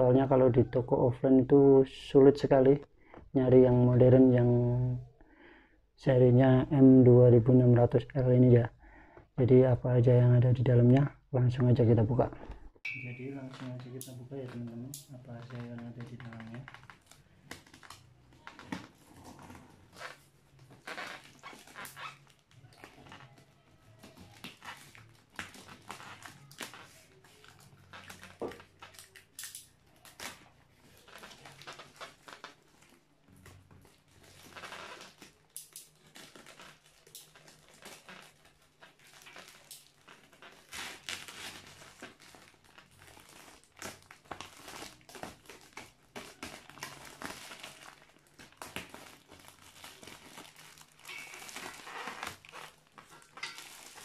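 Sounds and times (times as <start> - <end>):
cardboard packaging crinkling: 13.2 - 54.0.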